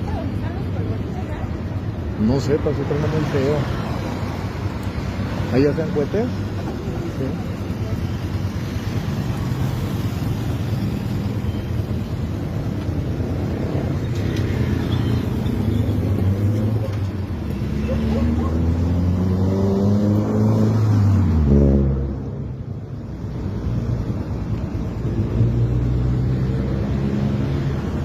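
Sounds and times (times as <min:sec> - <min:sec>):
vehicle engine revving up: 0:17.6 - 0:22.5.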